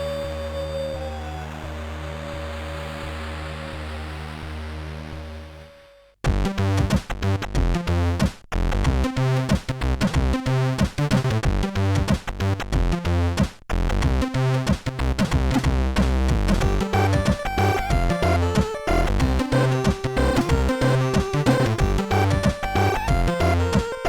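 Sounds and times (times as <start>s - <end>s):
electronic music with drum-machine beat: 14.7s - 24.0s.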